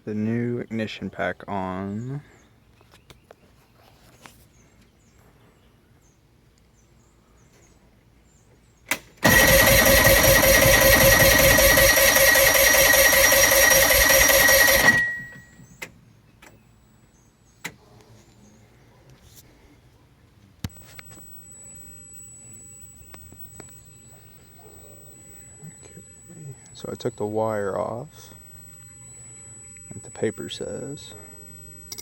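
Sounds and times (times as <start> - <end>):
outboard engine starter cranking: 9.2 - 15.8.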